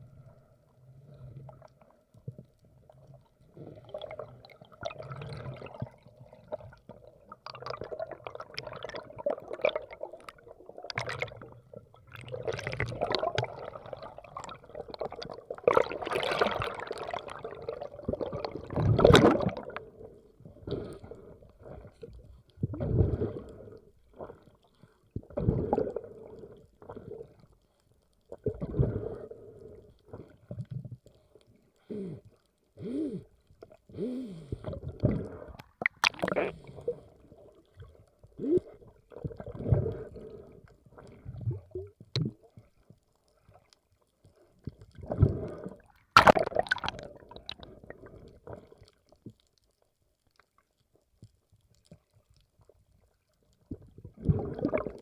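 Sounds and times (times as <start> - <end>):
water sloshing and gurgling: 0.0 - 31.8, 32.5 - 55.0
water splashes: 3.8 - 19.9, 35.0 - 38.1, 46.2 - 49.2, 53.6 - 55.0.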